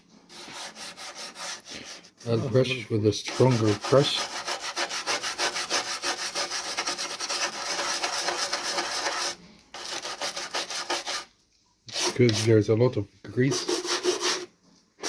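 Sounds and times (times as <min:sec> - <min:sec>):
stiff brush scrubbing: 0:00.3 - 0:11.3, 0:13.4 - 0:14.5.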